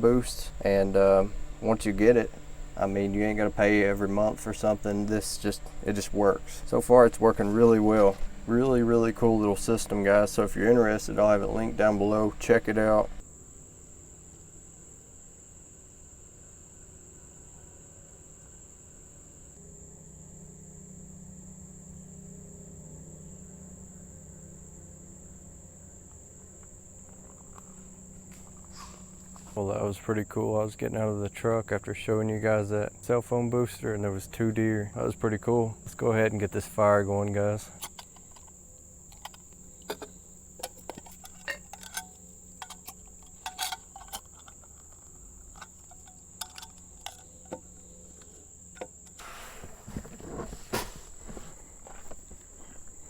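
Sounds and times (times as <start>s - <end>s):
crickets trilling: 0.0s - 53.0s
faint low hum: 0.0s - 53.0s
light clicks and knocks: 37.8s - 49.2s
brief rustle: 49.1s - 53.0s.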